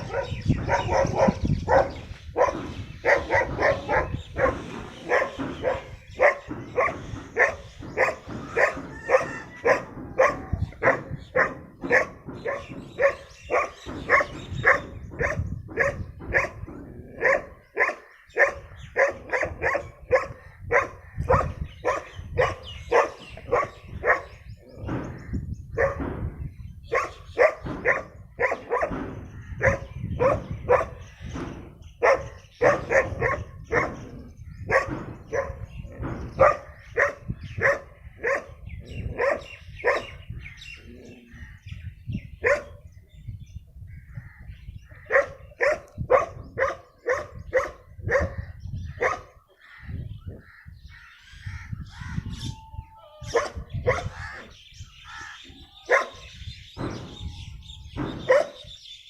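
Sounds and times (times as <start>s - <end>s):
dog barking: 0.0s - 16.6s, 17.2s - 24.4s, 25.8s - 26.1s, 26.9s - 29.0s, 29.6s - 31.0s, 32.0s - 34.0s, 34.7s - 35.7s, 36.3s - 40.2s, 42.4s - 42.8s, 45.1s - 48.4s, 49.0s - 49.3s, 53.3s - 54.2s, 55.9s - 56.2s, 58.3s - 58.6s
bird calls: 0.0s - 59.0s.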